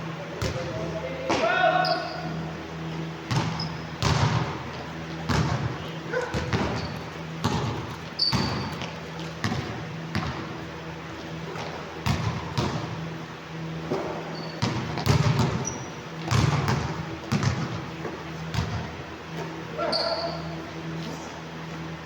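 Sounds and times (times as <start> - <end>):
basketball bouncing on court: 0.4 - 1.6, 3.3 - 10.7, 11.5 - 13.1, 13.9 - 19.0
sneakers squeaking on floor: 1.8 - 2.4, 3.3 - 4.0, 4.7 - 10.5, 13.9 - 21.1.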